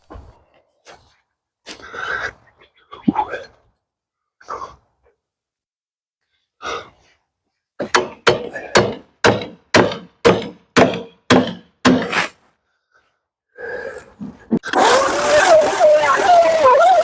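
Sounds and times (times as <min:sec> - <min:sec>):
hammer knocking wedges into log: 0:07.8 - 0:12.3.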